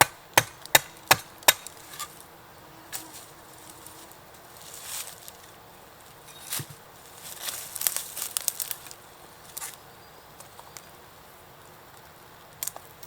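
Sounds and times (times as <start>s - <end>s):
crinkling and crackling: 3.0s - 9.8s.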